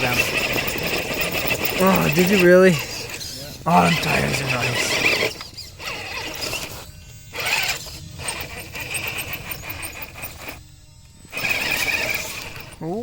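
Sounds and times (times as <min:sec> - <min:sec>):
electric motor whining: 0:00.0 - 0:13.0.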